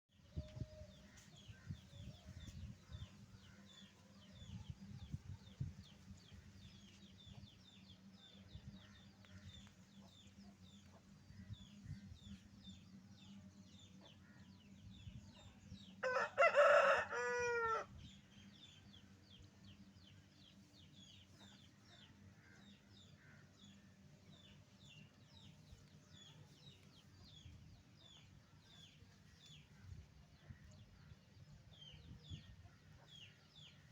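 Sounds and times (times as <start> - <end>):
rooster crowing: 16.0 - 17.9.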